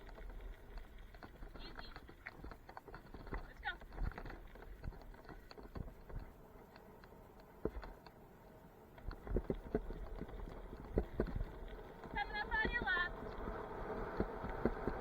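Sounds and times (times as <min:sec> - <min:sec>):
bicycle clattering over rough trail: 0:00.0 - 0:15.0.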